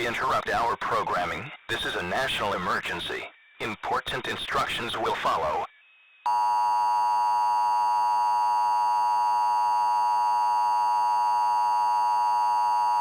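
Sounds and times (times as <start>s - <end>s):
two-tone electronic alarm: 6.2s - 13.0s.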